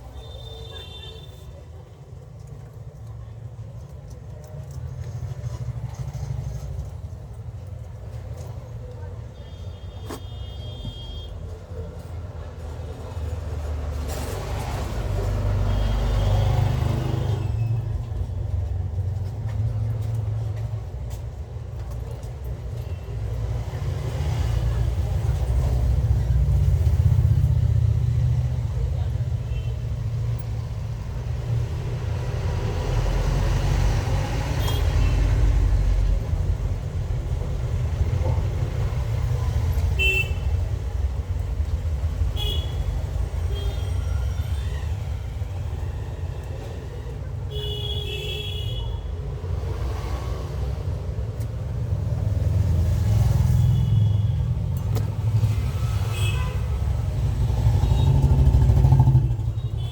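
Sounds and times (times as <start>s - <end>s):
road traffic rumbling: 0.0s - 59.9s
vehicle horn toots: 40.0s - 40.5s.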